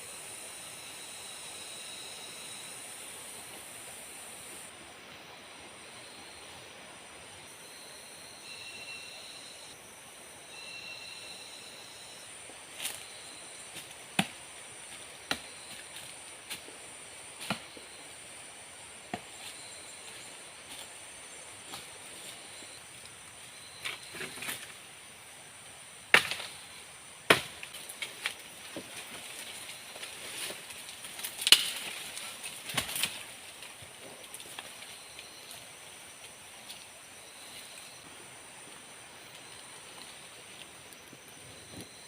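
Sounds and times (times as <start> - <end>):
blade chopping wood: 14.2 - 14.4, 26.1 - 26.5, 27.3 - 27.6.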